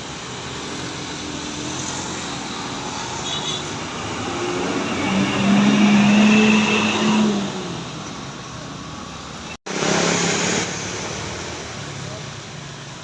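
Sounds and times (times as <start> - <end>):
bus engine passing: 0.0 - 13.0
passing traffic: 0.0 - 13.0
bus horn: 3.2 - 3.8, 4.8 - 7.5.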